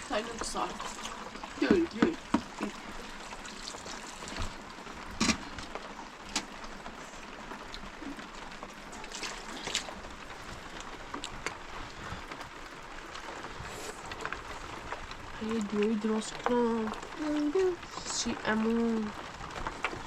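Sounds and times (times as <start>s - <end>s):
rain hissing: 0.0s - 20.0s
drops tapping: 1.5s - 2.8s.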